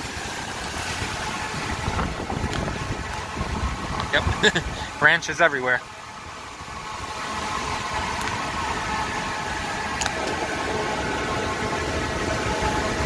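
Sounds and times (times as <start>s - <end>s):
wind rushing: 1.0s - 4.8s.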